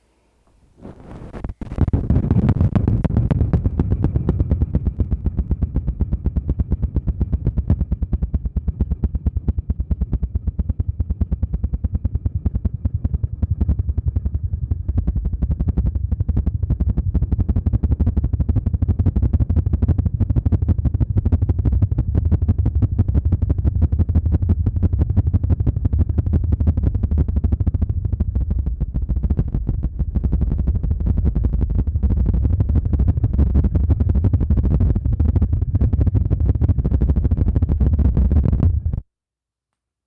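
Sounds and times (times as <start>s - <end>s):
fast low thumping: 0.5s - 10.5s.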